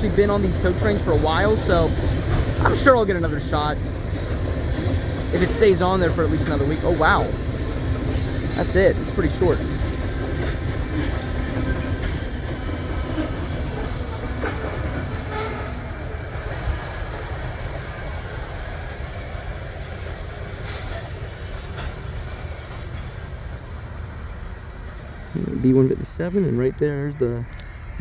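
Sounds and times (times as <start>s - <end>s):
train wheel clicks: 0.0s - 17.8s
freight train rail rumble: 0.0s - 28.0s.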